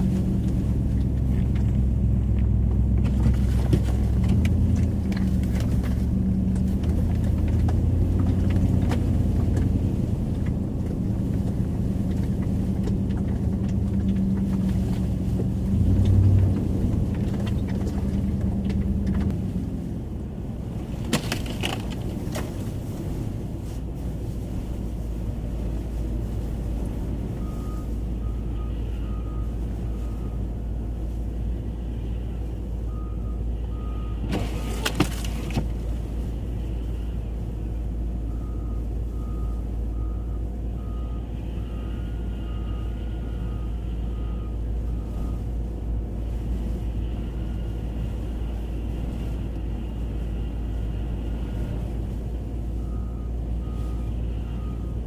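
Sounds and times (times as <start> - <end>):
vehicle rumble from inside cabin: 0.0 - 55.0
clatter: 20.8 - 22.8.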